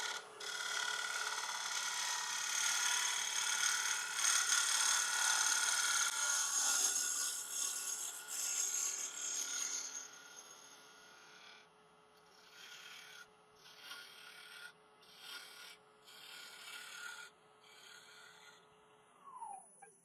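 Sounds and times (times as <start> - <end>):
gouge scraping wood on lathe: 0.0 - 6.1, 12.5 - 18.6
lathe whine: 0.0 - 7.7.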